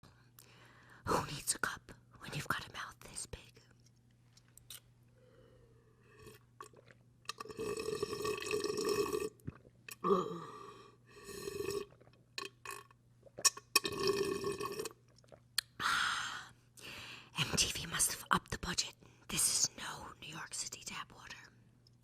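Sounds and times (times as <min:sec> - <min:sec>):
woman burping loudly: 0:07.4 - 0:10.7.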